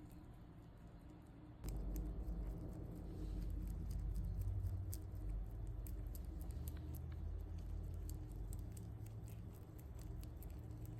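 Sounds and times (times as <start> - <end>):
low steady hum: 0.0 - 10.9
rabbit chewing food: 0.0 - 10.9.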